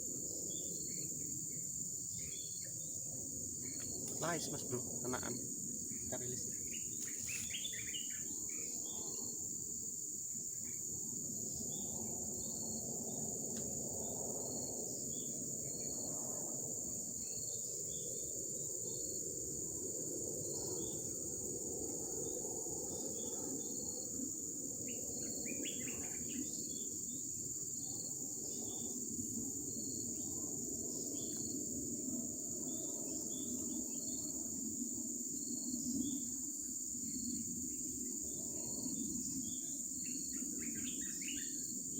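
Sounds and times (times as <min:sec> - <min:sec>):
insects droning: 0:00.0 - 0:41.9
bird chirps: 0:06.0 - 0:08.4.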